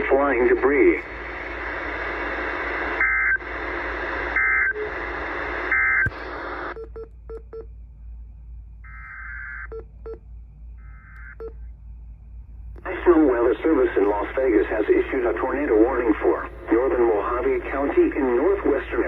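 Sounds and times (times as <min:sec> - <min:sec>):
radio static: 0:00.0 - 0:06.8, 0:12.8 - 0:19.0.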